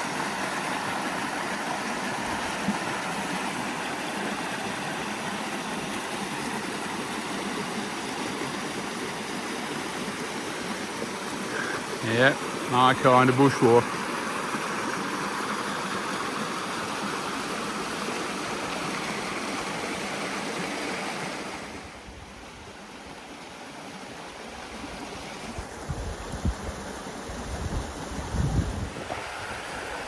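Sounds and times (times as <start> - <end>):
water rushing over waterfall: 0.0 - 22.0.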